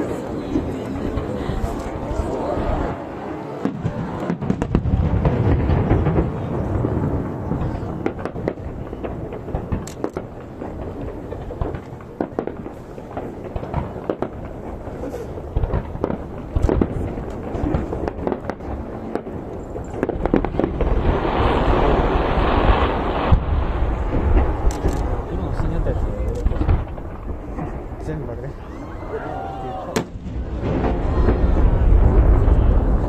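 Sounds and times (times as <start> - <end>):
fireworks bangs and crackles: 0.0 - 33.0
low rumble: 30.0 - 33.0.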